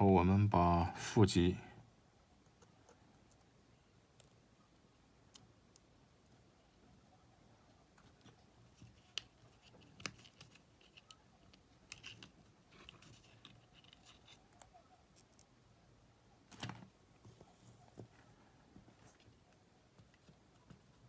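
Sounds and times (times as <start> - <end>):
light scratching: 8.0 - 15.4.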